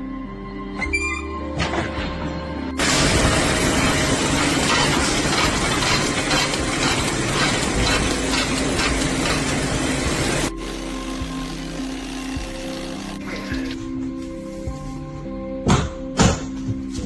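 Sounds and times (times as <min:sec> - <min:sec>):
machine running with fast clatter: 0:02.8 - 0:13.8.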